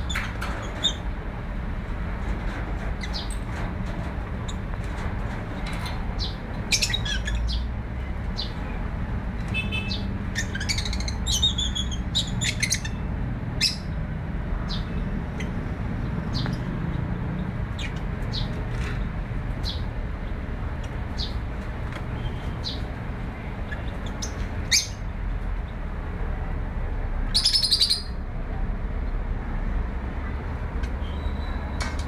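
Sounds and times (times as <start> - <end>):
bird chirping: 6.2 - 8.7, 9.5 - 13.0, 22.2 - 25.1, 27.3 - 28.2.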